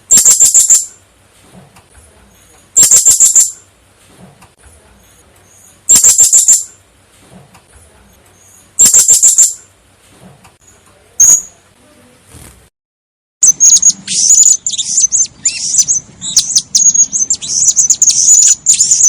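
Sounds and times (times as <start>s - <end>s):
parrot high-pitched calls: 0.0s - 1.0s, 2.7s - 3.6s, 5.5s - 6.8s, 8.4s - 9.7s, 13.4s - 19.0s.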